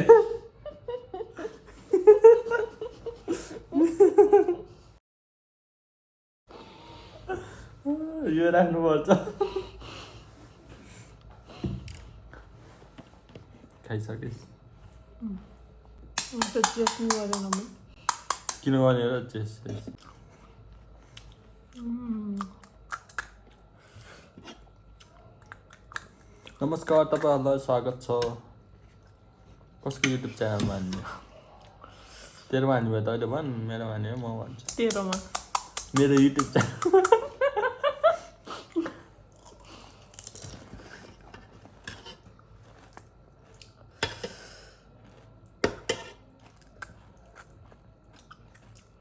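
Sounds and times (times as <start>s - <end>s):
crunching and chewing: 22.4s - 27.2s, 39.2s - 49.0s.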